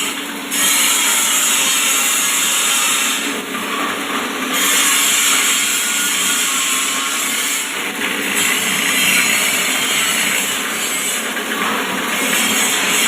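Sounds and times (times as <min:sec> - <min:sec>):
leaf grinding machine rushing: 0:00.0 - 0:13.0
low motor hum: 0:07.8 - 0:13.0.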